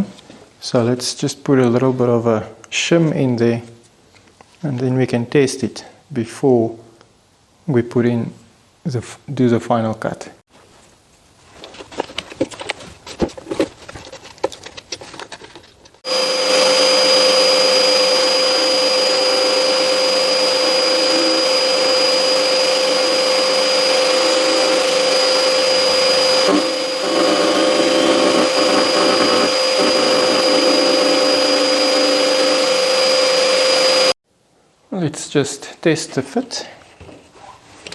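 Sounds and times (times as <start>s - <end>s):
router cutting wood: 16.1s - 34.2s.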